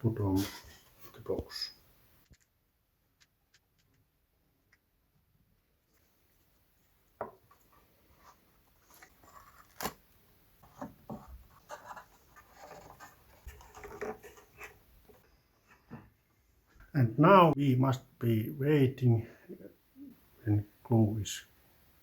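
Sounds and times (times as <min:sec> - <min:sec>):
wood scraping and rubbing: 0:10.6 - 0:15.2.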